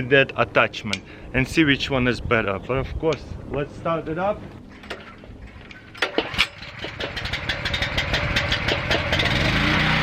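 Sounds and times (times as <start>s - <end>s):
pressure washer engine starting: 6.0s - 10.0s.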